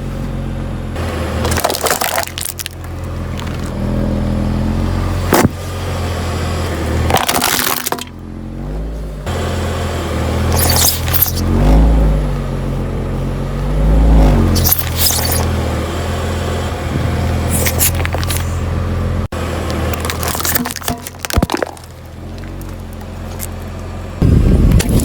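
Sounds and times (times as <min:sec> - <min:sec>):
objects crunching under tyres: 0:00.0 - 0:09.3, 0:10.3 - 0:12.3, 0:13.6 - 0:16.2, 0:17.1 - 0:25.0
car engine revving: 0:08.0 - 0:20.6.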